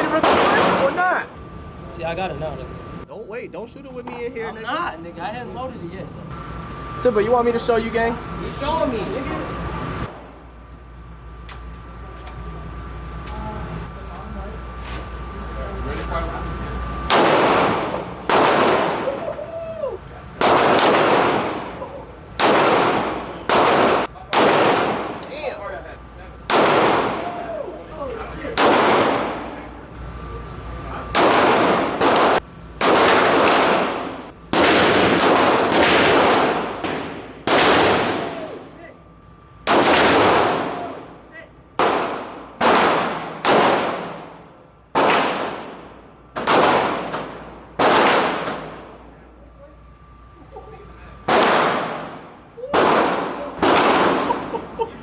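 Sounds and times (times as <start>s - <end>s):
gunshots with reverberant tail: 0.0s - 1.1s, 17.1s - 19.2s, 20.4s - 25.2s, 26.5s - 27.3s, 28.6s - 29.4s, 31.2s - 38.7s, 39.7s - 41.1s, 41.8s - 44.4s, 45.0s - 49.0s, 51.3s - 54.7s.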